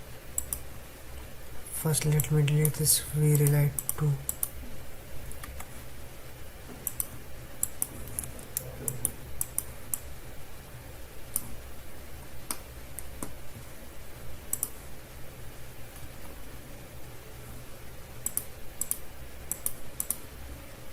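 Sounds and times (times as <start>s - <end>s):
steady low hum: 0.0s - 20.9s
mouse and keyboard clicks: 6.8s - 10.0s, 18.2s - 20.2s.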